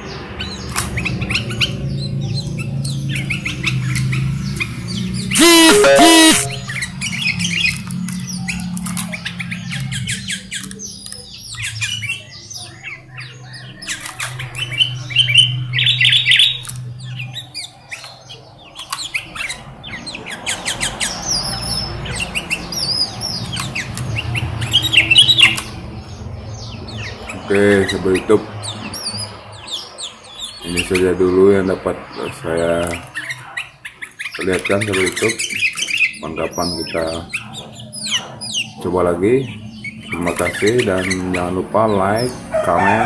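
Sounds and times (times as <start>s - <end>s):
birds chirping: 0.0s - 7.7s, 8.3s - 42.9s
loud harsh bird squawk: 5.3s - 6.9s.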